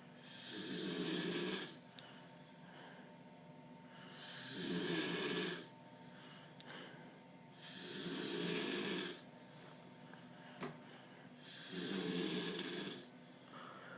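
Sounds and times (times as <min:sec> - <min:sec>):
quiet breathing: 0:00.0 - 0:13.9
person snoring heavily: 0:00.2 - 0:01.8, 0:04.0 - 0:05.7, 0:07.6 - 0:09.3, 0:11.4 - 0:13.9.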